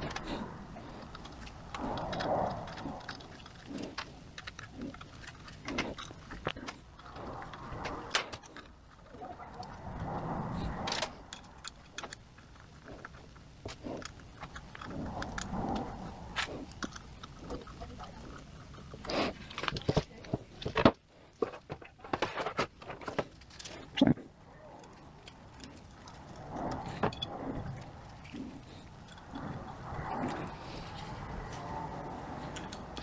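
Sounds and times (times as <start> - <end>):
small metal parts clattering: 2.6 - 8.8, 10.6 - 12.2.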